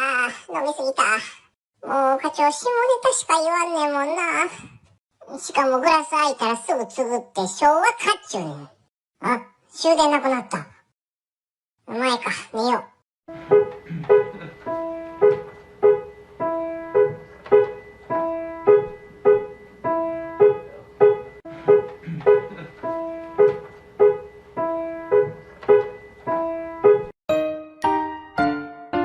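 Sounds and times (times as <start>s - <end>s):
piano music: 13.3s - 29.0s.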